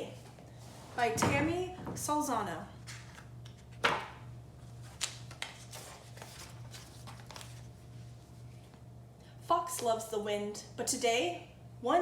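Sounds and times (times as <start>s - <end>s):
paper rustle: 4.7s - 7.8s.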